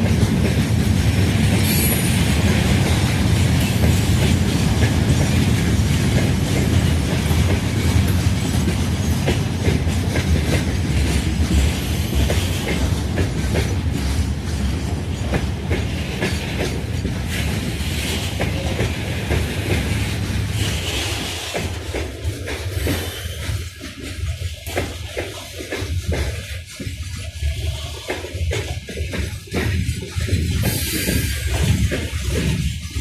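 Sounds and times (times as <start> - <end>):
train rumbling past: 0.0 - 33.0
wheels clacking over rail joints: 0.0 - 33.0.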